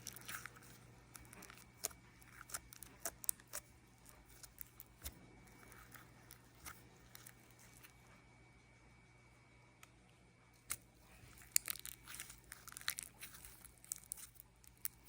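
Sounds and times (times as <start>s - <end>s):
quiet steady hum: 0.0s - 15.0s.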